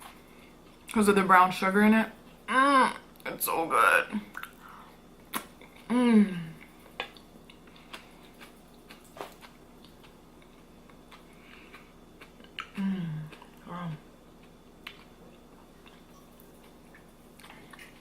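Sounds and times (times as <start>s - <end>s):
person chewing food: 4.4s - 18.0s
person humming mmm: 5.8s - 6.7s, 12.6s - 14.1s.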